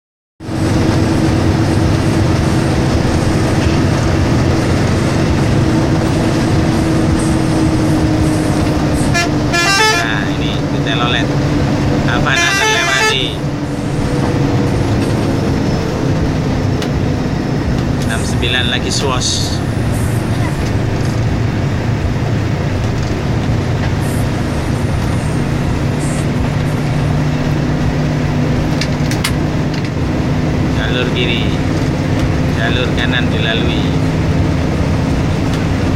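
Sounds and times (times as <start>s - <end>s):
bus engine rumbling: 0.4s - 35.9s
road noise: 0.4s - 35.9s
multi-tone bus horn tune: 6.2s - 11.1s, 12.0s - 13.6s.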